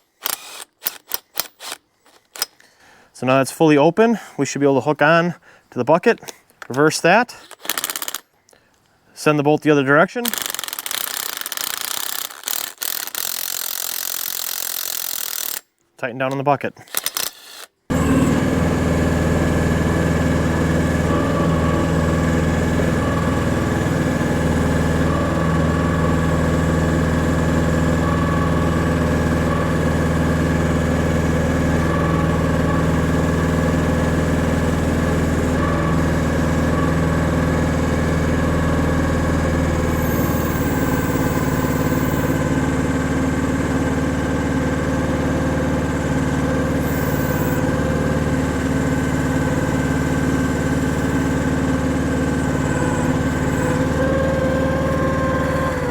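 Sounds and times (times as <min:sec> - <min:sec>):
excavator engine running: 0:17.9 - 0:55.9.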